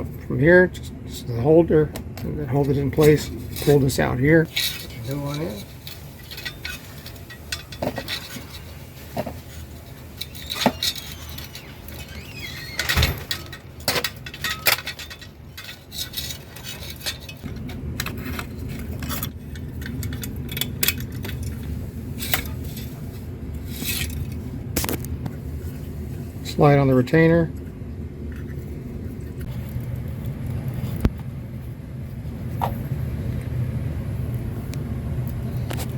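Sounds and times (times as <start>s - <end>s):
steady low hum: 0.0s - 35.9s
small metal parts clinking: 2.6s - 23.0s.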